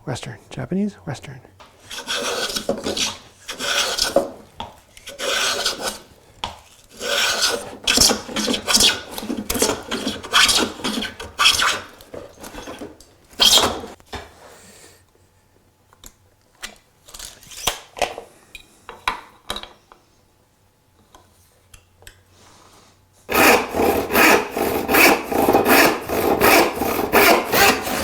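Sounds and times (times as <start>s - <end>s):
hand tool rasping wood: 1.8s - 6.1s, 6.9s - 14.0s, 23.3s - 28.0s.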